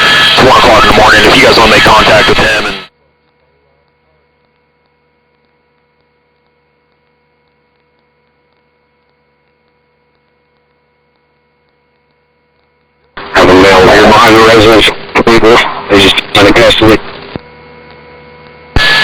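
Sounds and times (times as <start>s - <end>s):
faint radio hum and hiss: 0.0s - 19.0s
faint ticks: 3.2s - 13.2s.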